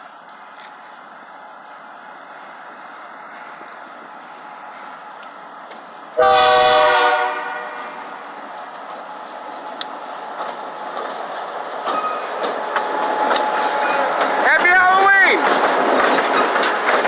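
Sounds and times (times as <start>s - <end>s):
train rumble: 0.0s - 17.0s
locomotive air horn blast: 6.2s - 8.1s
clicks from rails: 9.6s - 14.8s, 15.4s - 17.0s.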